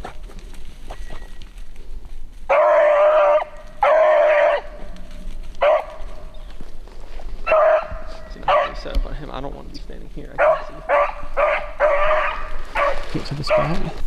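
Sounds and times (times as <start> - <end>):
puppy baying: 2.5 - 9.2, 10.3 - 14.0.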